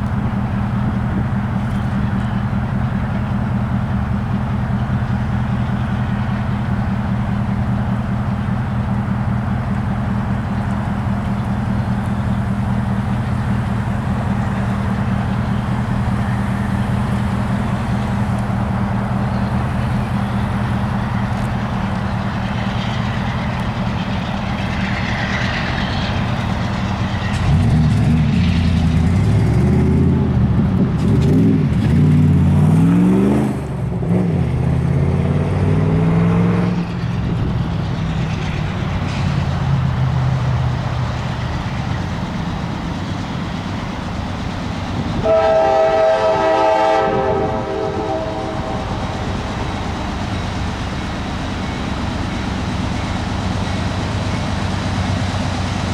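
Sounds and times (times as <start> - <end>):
diesel locomotive engines: 0.0 - 55.9.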